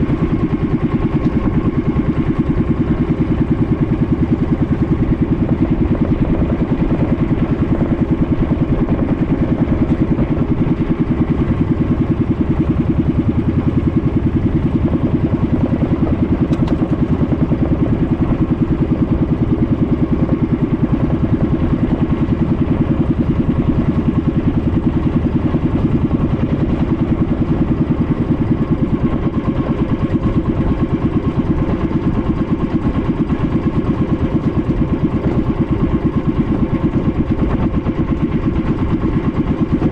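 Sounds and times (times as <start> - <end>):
small engine running steadily: 0.0 - 39.9.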